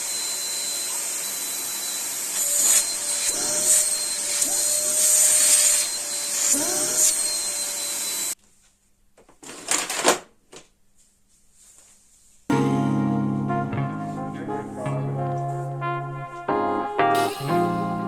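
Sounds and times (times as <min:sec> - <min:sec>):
handheld vacuum cleaner whining: 0:00.0 - 0:08.4.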